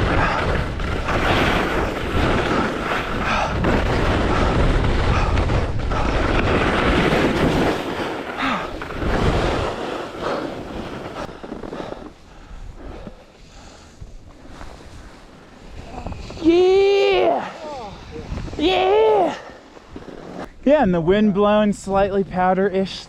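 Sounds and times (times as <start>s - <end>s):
wind buffeting microphone: 0.0s - 11.4s, 17.8s - 19.3s.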